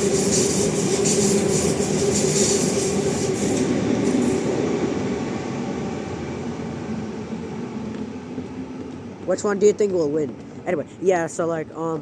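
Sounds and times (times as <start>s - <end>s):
wheels on rails: 0.0s - 5.0s.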